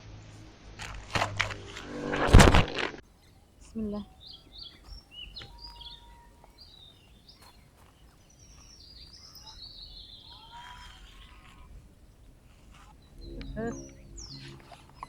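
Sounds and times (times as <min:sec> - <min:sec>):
faint outdoor rumble: 0:00.0 - 0:15.0
songbirds chirping: 0:03.0 - 0:15.0.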